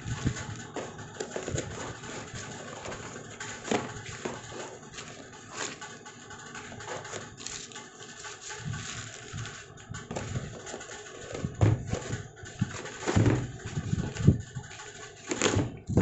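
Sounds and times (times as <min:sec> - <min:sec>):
packaging rustling and crinkling: 0:00.0 - 0:16.0.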